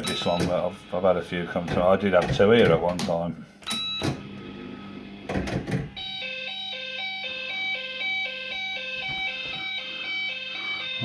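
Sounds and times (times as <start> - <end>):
fruit machine beeping tune: 0.0 - 1.0, 3.7 - 4.5, 6.0 - 11.0.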